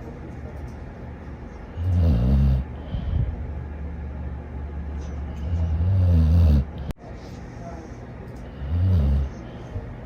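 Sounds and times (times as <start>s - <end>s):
dog snoring: 1.8s - 2.9s, 5.4s - 6.9s, 8.5s - 9.4s.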